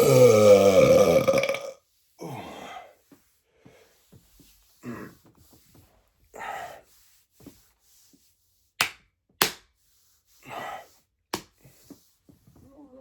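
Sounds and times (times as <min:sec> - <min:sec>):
heavy breathing: 0:06.3 - 0:06.9.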